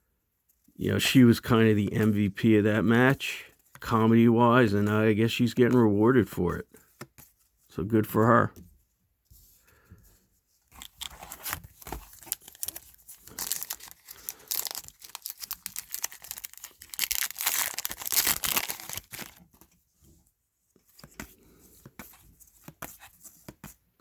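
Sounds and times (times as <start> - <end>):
wrapper tearing and crinkling: 10.7 - 19.5.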